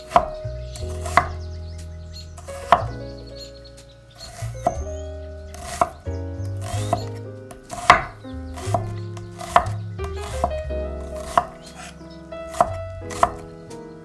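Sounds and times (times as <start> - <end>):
knife chopping on cutting board: 0.0 - 1.4, 2.4 - 3.0, 4.3 - 4.8, 5.6 - 6.0, 6.6 - 13.5
background music with bass line: 0.0 - 14.0.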